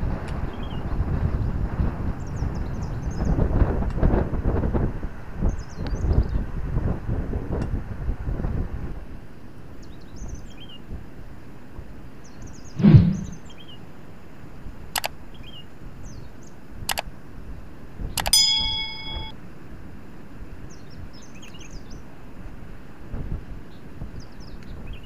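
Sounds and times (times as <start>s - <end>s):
wind noise: 0.0s - 9.0s, 12.8s - 13.5s
bird chirps: 12.6s - 13.7s
low thump: 12.8s - 13.4s
small metal object clinking: 18.4s - 19.3s.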